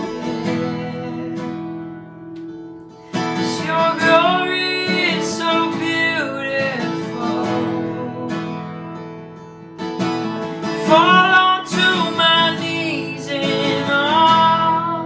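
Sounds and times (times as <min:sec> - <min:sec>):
person singing: 0:00.0 - 0:02.0, 0:03.3 - 0:08.7, 0:10.7 - 0:15.0
strummed acoustic guitar: 0:00.0 - 0:15.0.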